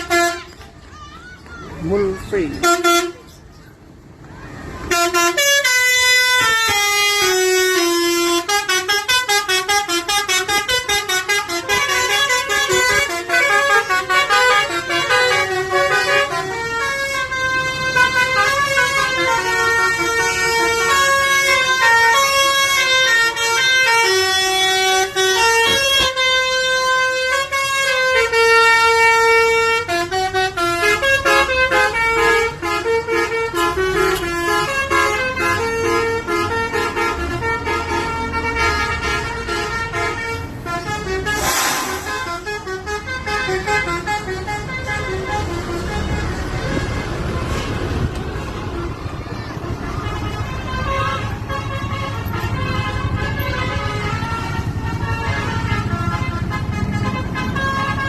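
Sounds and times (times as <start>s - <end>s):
bus horn playing a tune: 0.0s - 0.6s, 2.2s - 3.3s, 4.8s - 58.0s.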